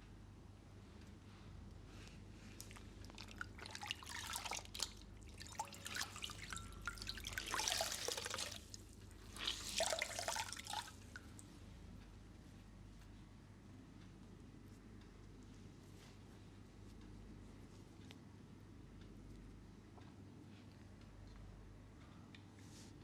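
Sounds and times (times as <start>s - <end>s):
wet crackling and dripping: 2.4s - 12.2s.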